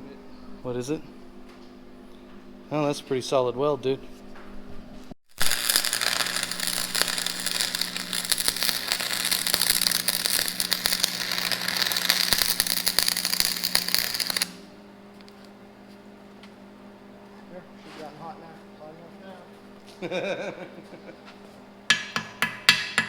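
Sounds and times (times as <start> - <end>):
arc welder crackling: 5.3 - 15.4.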